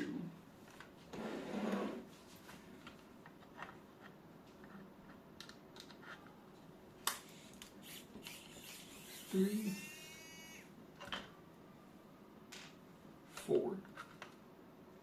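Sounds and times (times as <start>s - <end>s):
screws clicking and scraping: 7.2s - 10.6s.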